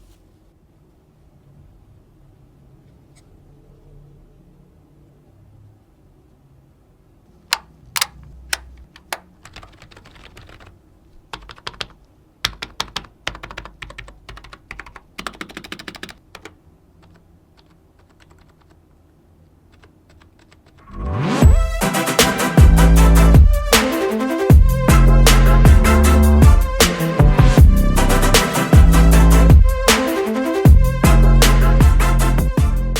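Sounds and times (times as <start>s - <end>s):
keyboard keys clicking: 7.5s - 10.7s, 11.3s - 18.8s, 19.7s - 20.8s
music: 20.9s - 32.9s.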